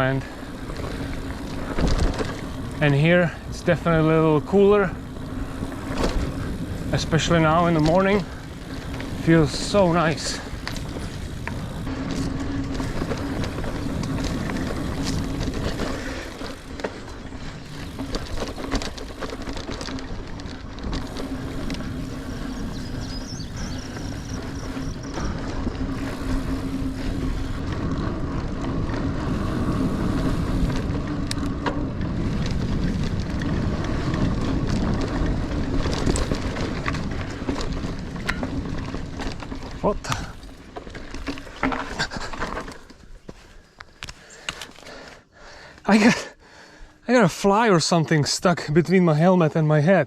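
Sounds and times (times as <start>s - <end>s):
bike rattling over bumps: 0.0s - 50.0s
bike tyres rolling on dirt: 0.0s - 50.0s
wind on microphone: 20.2s - 39.0s.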